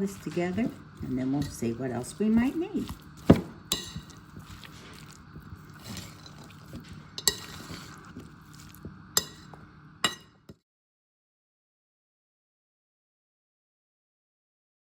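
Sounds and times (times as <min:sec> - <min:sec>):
spoon squelching in thick food: 0:00.0 - 0:10.2
spoon clinking against bowl: 0:02.4 - 0:10.5.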